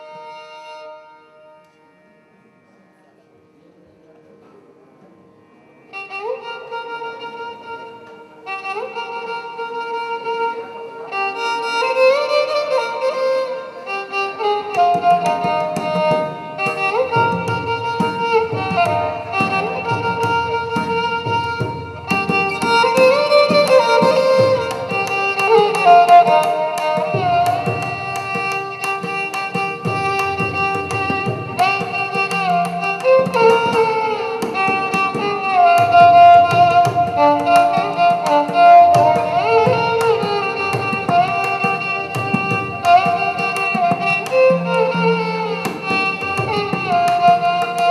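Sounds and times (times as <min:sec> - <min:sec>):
violin melody: 0:00.0 - 0:47.9
percussion strokes: 0:14.4 - 0:47.9.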